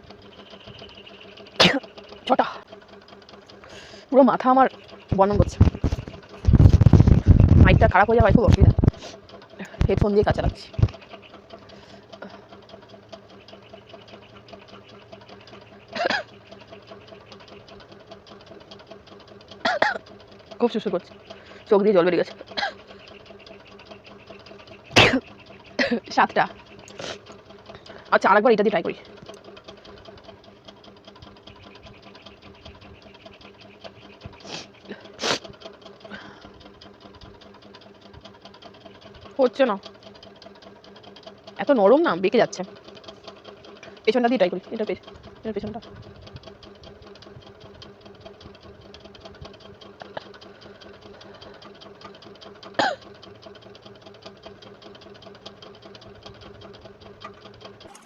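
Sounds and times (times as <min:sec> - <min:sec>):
fast even ticking: 0:00.0 - 0:58.0
fast mechanical rattle with hum: 0:00.0 - 0:58.0
sharp breath sounds: 0:03.6 - 0:04.1, 0:21.4 - 0:21.7.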